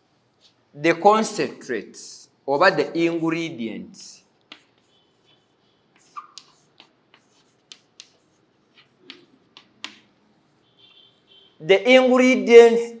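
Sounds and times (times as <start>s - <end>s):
faint sharp clicks and taps: 4.4s - 10.2s.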